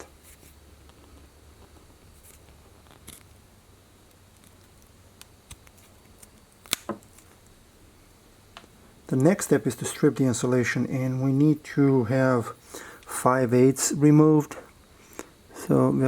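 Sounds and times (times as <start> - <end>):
wire snipped by cutter: 6.6 - 7.0.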